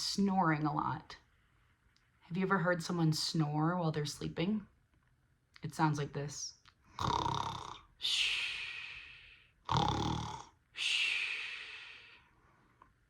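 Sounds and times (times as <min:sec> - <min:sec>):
woman imitating snoring: 0:07.0 - 0:07.8, 0:09.7 - 0:10.5.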